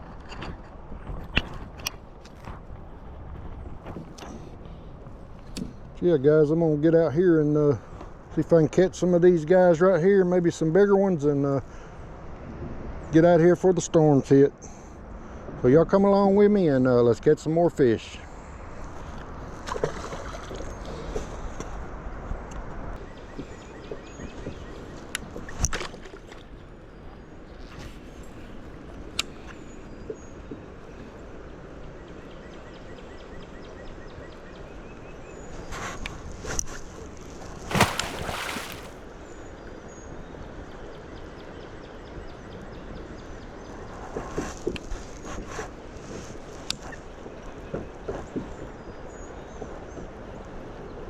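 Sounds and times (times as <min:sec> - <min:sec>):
wind: 0:00.0 - 0:51.0
kayak and fishing gear knocks: 0:37.7 - 0:38.9
river flowing: 0:37.7 - 0:39.0.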